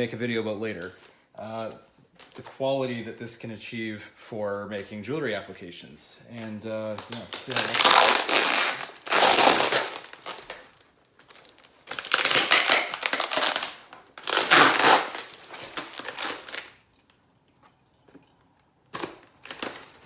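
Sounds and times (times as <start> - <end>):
packing material crinkling: 6.3 - 17.2, 18.9 - 20.0.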